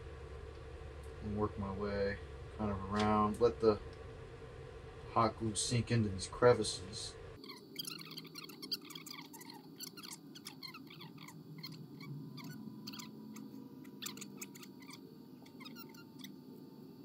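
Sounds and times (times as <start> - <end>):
low steady hum: 0.0 - 17.0
glue gun trigger squeaks and clicks: 7.4 - 11.8, 13.8 - 16.4.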